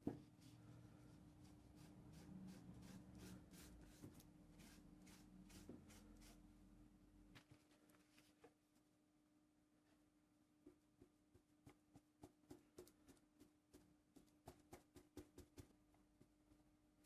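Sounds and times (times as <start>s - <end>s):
faint scraping strokes: 0.2s - 6.5s.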